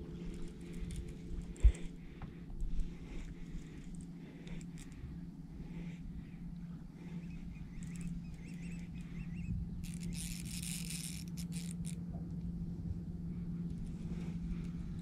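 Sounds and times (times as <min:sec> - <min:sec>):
steady low hum: 0:00.0 - 0:15.0
birds chirping: 0:05.8 - 0:10.4.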